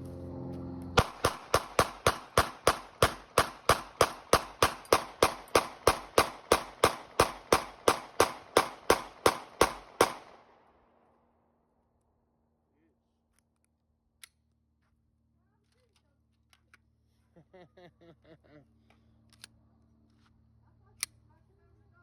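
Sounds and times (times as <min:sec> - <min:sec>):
pistol shots: 0:01.0 - 0:10.4.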